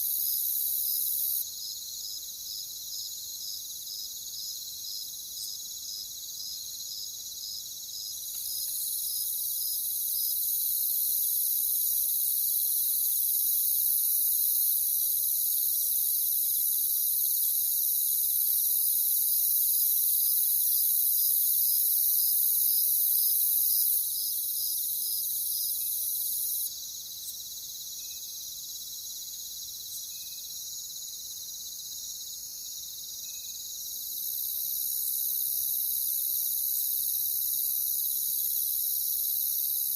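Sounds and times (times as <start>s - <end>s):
repeating insect chirp: 0.0s - 39.9s.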